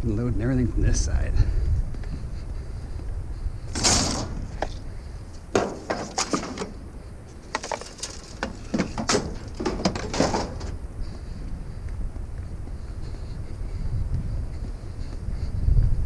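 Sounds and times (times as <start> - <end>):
scrap metal knocks and rattles: 3.7 - 4.8, 5.5 - 6.8, 7.4 - 10.7.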